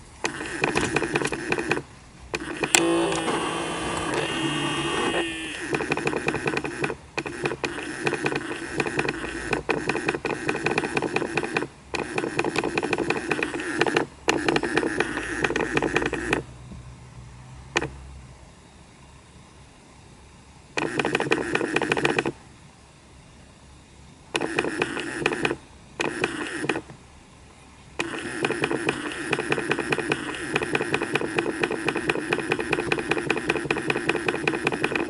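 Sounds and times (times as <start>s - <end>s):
steady tones: 0.0s - 6.4s.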